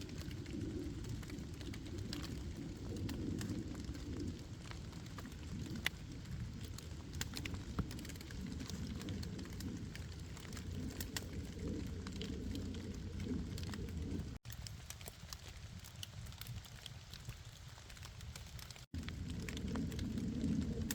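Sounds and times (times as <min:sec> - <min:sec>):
steady low rumble: 0:00.0 - 0:14.4, 0:19.0 - 0:20.9
campfire crackling and popping: 0:00.0 - 0:20.9
rain pattering: 0:00.0 - 0:20.9.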